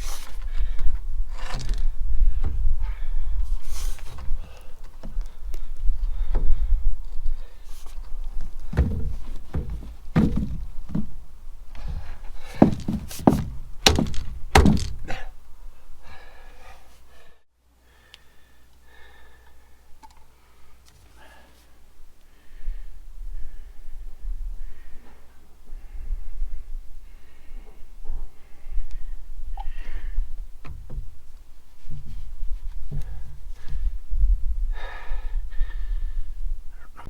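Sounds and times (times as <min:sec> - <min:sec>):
dull thunks and knocks: 0:07.9 - 0:15.3, 0:30.6 - 0:31.2.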